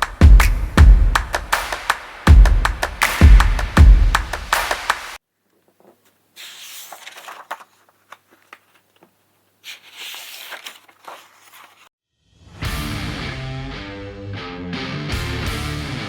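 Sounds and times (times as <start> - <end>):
handling clicks and rustles: 6.9 - 11.9.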